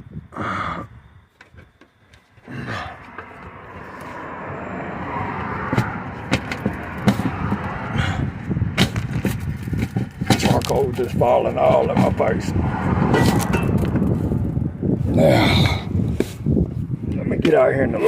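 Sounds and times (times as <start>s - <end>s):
steady rushing noise: 3.0s - 17.9s
plastic knocks and scraping: 5.6s - 7.8s, 8.7s - 12.3s.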